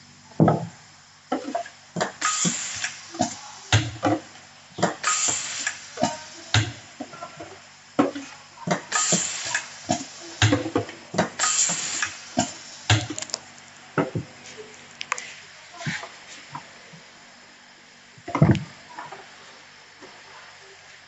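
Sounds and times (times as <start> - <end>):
machine low hum: 0.0 - 2.0.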